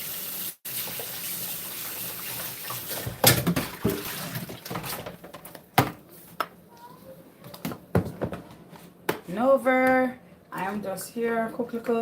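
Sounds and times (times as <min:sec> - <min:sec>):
water running from a tap: 0:00.0 - 0:05.2.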